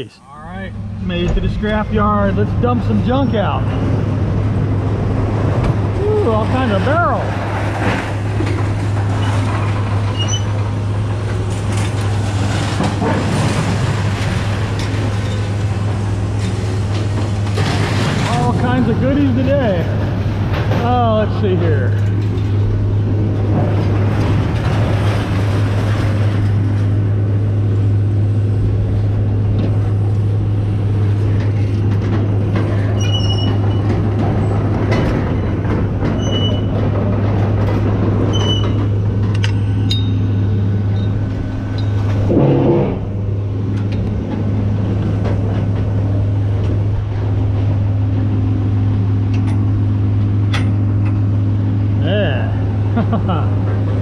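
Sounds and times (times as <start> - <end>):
engine humming: 0.0 - 54.0
scrap metal clanking and squealing: 6.6 - 19.8, 31.4 - 44.0
metal scraping: 36.0 - 47.6.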